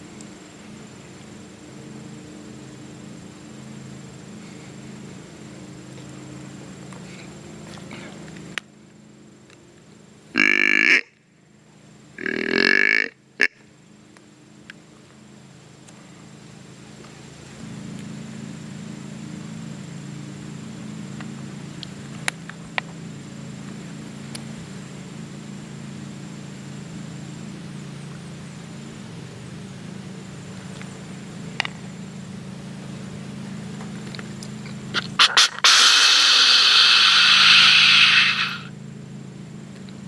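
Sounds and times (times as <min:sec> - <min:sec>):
deer snorting: 0:12.2 - 0:13.1, 0:35.0 - 0:38.7
deer hissing wheeze: 0:35.0 - 0:38.7.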